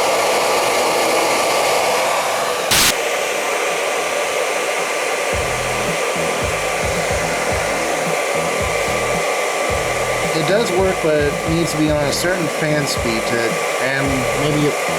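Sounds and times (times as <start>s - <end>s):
hairdryer running: 0.0s - 14.9s.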